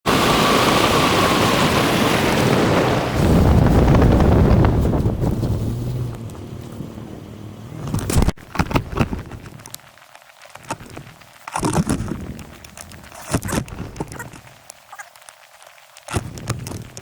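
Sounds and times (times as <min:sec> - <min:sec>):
footsteps crunching in snow: 0:03.2 - 0:06.9.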